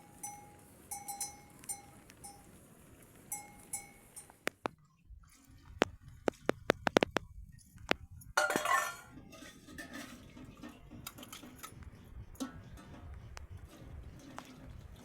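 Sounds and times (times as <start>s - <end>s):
faint uneven clattering: 0.0s - 15.0s
small hard objects clinking: 8.4s - 10.4s.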